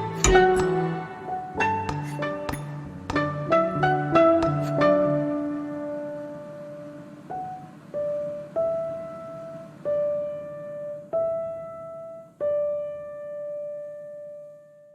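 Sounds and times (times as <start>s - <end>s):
slow solo piano music: 0.0s - 14.9s.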